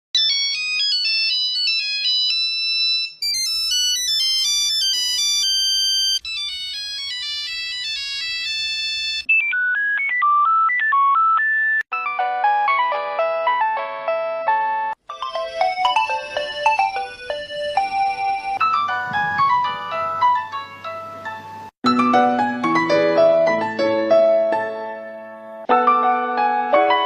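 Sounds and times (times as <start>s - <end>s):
mobile phone ringtones: 0.2s - 12.3s, 15.1s - 20.3s.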